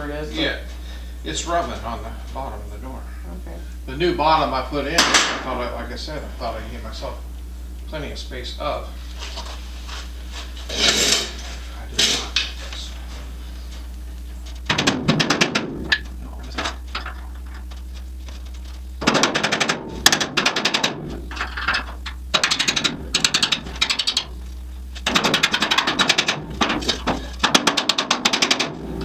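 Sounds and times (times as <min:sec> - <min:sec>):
steady low hum: 0:00.0 - 0:29.0
power tool rattling clicks: 0:14.5 - 0:29.0.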